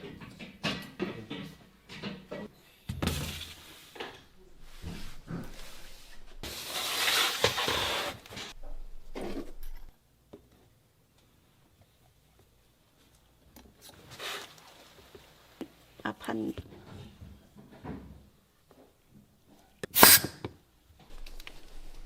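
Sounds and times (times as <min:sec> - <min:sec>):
loud hiss: 0:19.9 - 0:20.4.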